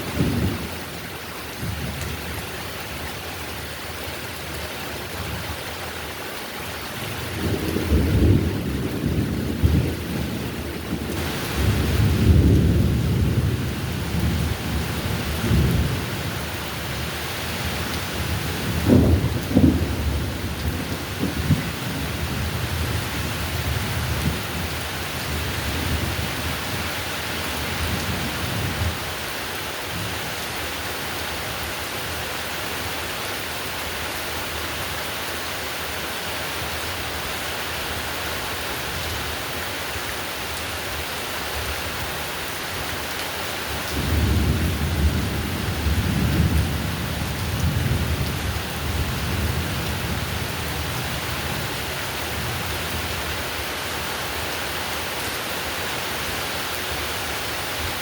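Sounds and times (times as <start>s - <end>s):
heavy rain: 0.0s - 58.0s
thunder rumbling: 7.2s - 26.7s, 43.9s - 53.2s.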